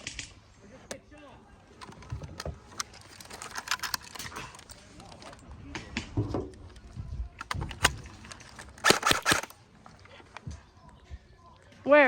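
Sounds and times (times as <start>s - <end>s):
gear rattling: 1.8s - 5.4s, 7.4s - 9.5s.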